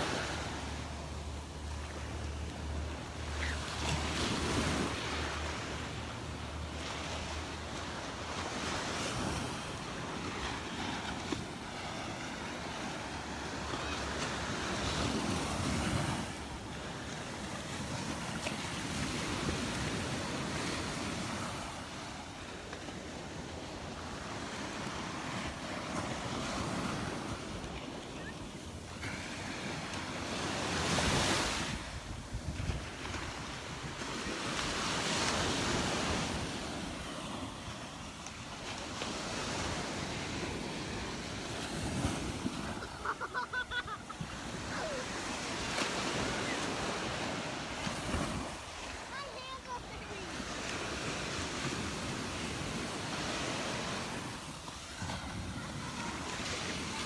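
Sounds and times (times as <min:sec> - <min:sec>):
surf washing onto beach: 0:00.0 - 0:57.0
wind buffeting microphone: 0:32.0 - 0:33.1.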